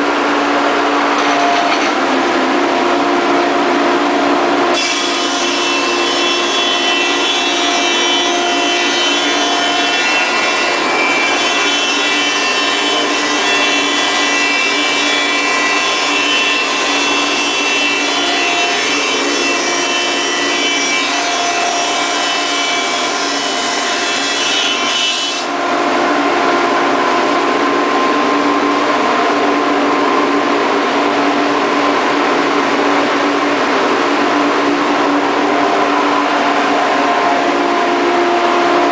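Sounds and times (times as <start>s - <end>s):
thickness planer cutting wood: 4.6s - 25.6s.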